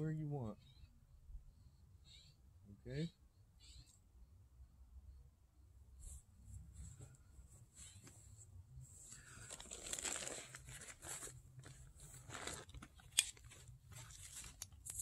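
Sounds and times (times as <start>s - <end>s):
rustling handling noise: 6.0s - 15.0s.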